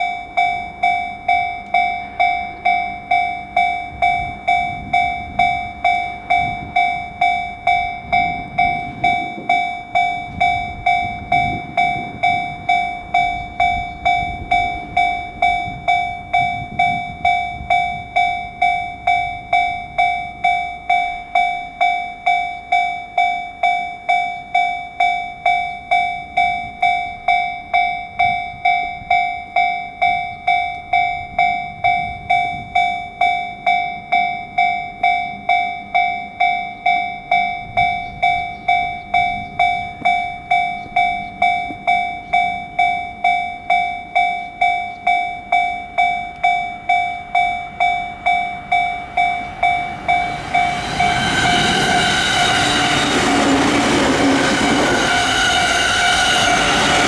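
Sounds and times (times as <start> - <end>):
level crossing warning bell: 0.0 - 57.0
low rumble: 47.8 - 57.0.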